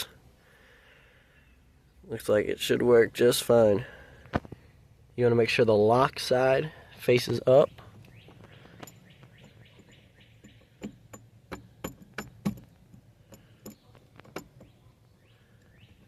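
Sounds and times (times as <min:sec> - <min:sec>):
metal clicks and taps: 0:08.3 - 0:14.7.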